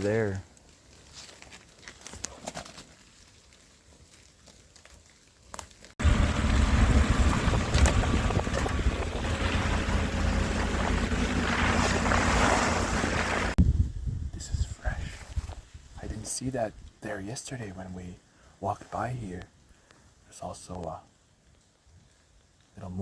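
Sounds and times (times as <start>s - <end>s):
vehicle engine rumble: 6.0s - 14.0s
wind noise on microphone: 6.6s - 10.2s, 11.4s - 17.0s.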